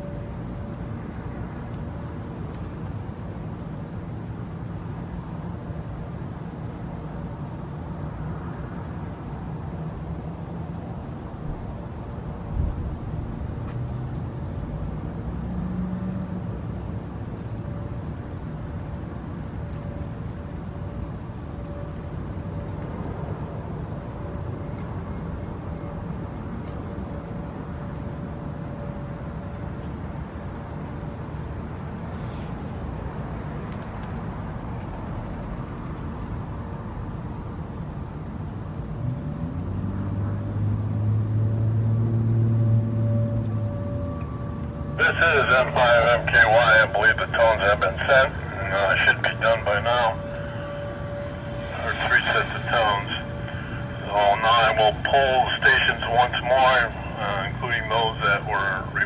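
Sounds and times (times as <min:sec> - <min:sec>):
low outdoor rumble: 0:16.1 - 0:59.0.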